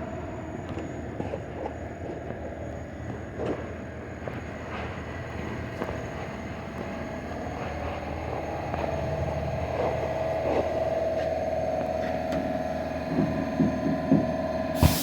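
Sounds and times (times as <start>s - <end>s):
low mechanical hum: 0.0s - 15.0s
steady mechanical whine: 0.0s - 15.0s.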